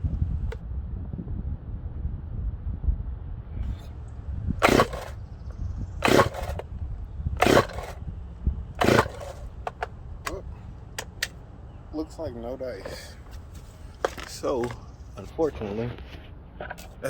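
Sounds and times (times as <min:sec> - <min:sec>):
chainsaw starter cord pulls: 0:04.6 - 0:05.2, 0:06.0 - 0:06.7, 0:07.4 - 0:08.0, 0:08.8 - 0:10.4.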